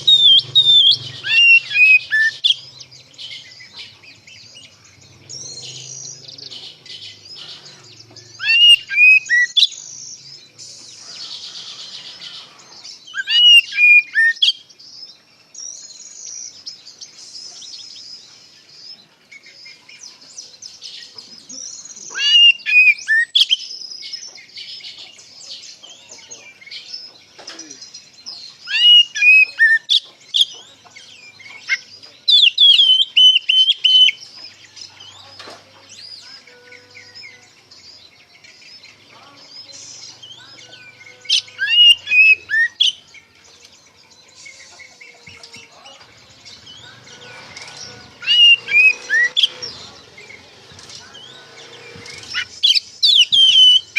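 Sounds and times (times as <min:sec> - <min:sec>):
bird singing whistled phrases: 0:00.0 - 0:02.7, 0:08.4 - 0:10.9, 0:13.1 - 0:14.6, 0:22.0 - 0:23.7, 0:28.6 - 0:30.0, 0:31.7 - 0:34.2, 0:39.9 - 0:43.1, 0:48.2 - 0:49.6, 0:52.1 - 0:53.9.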